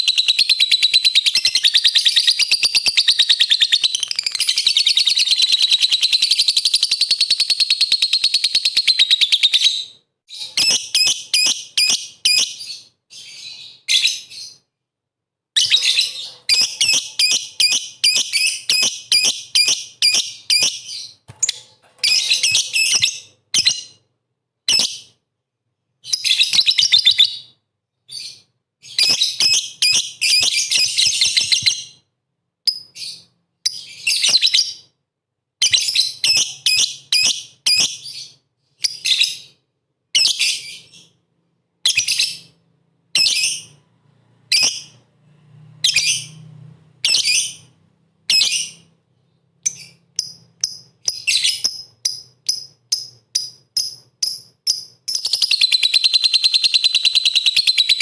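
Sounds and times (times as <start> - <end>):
lovebird chirping trills: 15.6 - 24.0.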